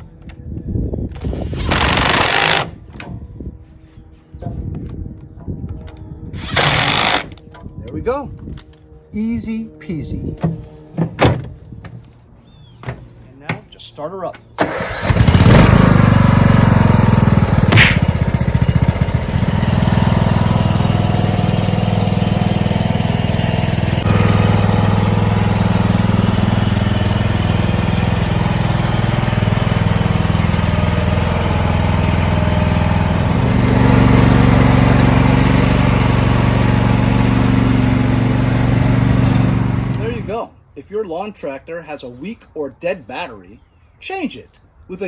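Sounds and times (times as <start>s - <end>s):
lawn tractor engine running: 14.6s - 40.3s.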